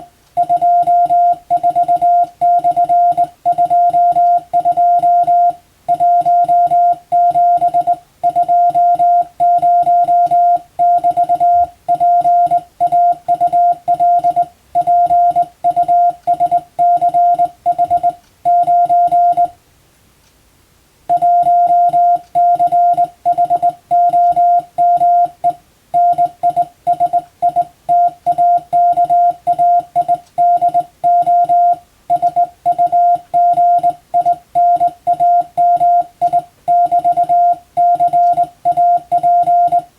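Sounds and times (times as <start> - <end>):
morse code tone: 0.0 - 19.6, 21.1 - 39.9.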